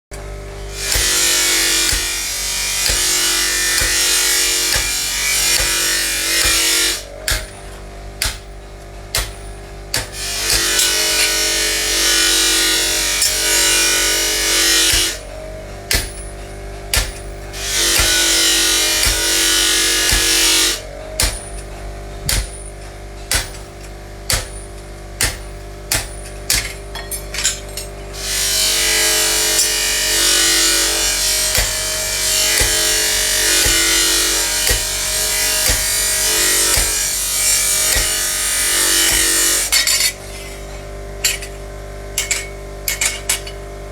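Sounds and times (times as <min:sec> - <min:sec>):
small power tool running: 0:00.2 - 0:08.6, 0:09.3 - 0:21.6, 0:28.1 - 0:40.3
metal parts clicking and knocking: 0:15.9 - 0:28.2, 0:41.2 - 0:43.7.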